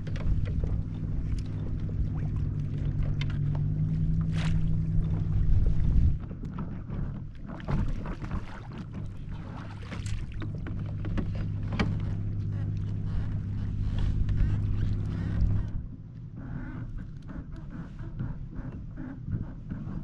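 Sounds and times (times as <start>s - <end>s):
knocks and clicks on kayak: 0.0s - 3.8s, 10.0s - 15.8s
electric trolling motor humming: 0.0s - 7.2s, 8.8s - 19.0s.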